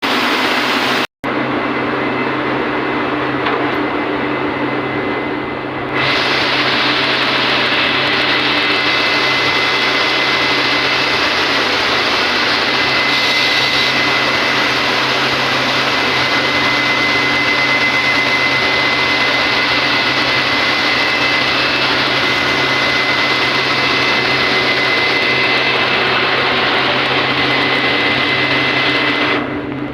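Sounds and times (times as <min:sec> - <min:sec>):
textile machinery droning: 0:00.0 - 0:29.9.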